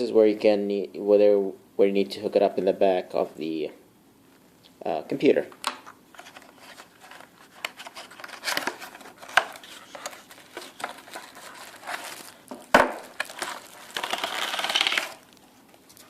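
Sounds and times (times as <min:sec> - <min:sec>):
plastic bag crinkling: 0:06.2 - 0:16.0.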